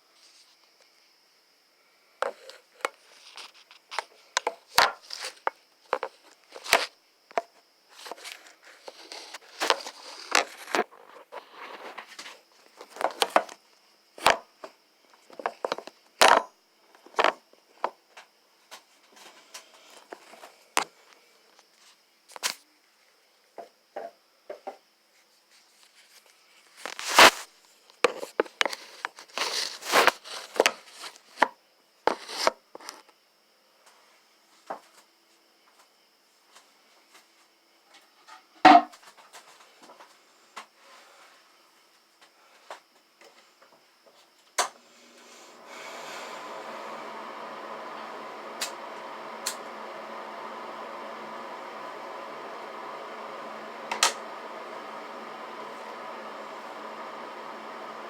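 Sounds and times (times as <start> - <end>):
rustling and crinkling: 8.0 - 13.5, 25.2 - 31.5.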